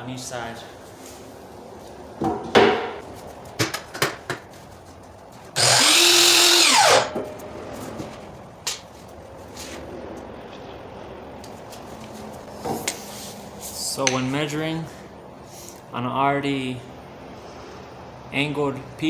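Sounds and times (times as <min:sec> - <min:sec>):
miter saw cutting: 0:05.6 - 0:07.2.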